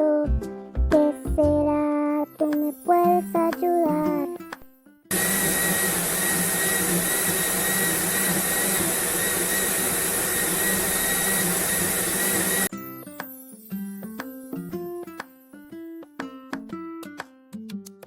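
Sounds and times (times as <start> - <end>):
vacuum cleaner motor whining: 5.1 - 12.7.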